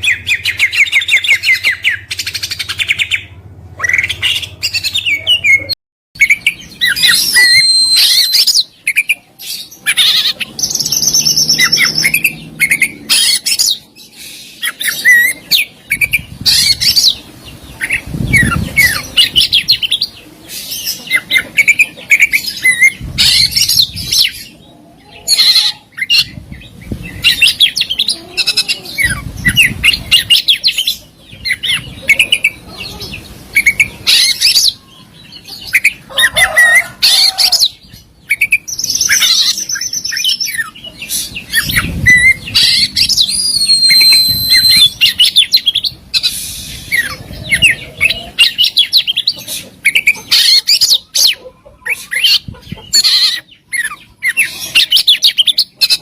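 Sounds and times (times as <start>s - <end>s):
bird singing varied song: 0.0s - 56.0s
clear held whistles: 7.1s - 8.5s, 43.2s - 45.1s.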